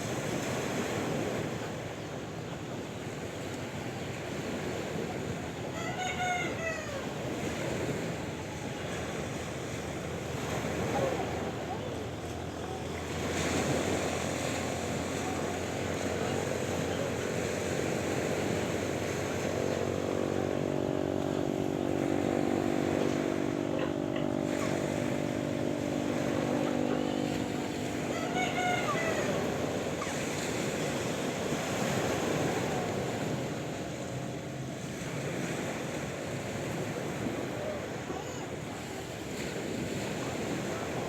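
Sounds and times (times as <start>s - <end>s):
sea waves washing: 0.0s - 41.0s
short call: 27.2s - 30.6s.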